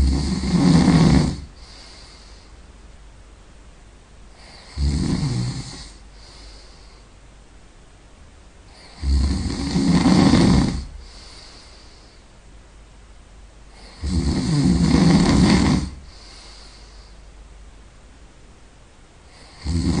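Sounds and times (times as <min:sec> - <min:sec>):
person snoring loudly: 0:00.0 - 0:02.3, 0:04.4 - 0:06.5, 0:08.7 - 0:11.5, 0:13.8 - 0:16.5, 0:19.3 - 0:20.0
soft breathing: 0:00.0 - 0:02.7, 0:05.5 - 0:07.2, 0:10.0 - 0:12.4, 0:14.8 - 0:17.4.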